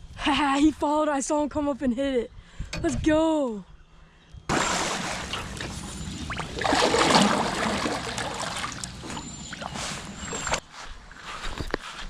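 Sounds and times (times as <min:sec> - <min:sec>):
water splashing and trickling: 0:04.5 - 0:10.6.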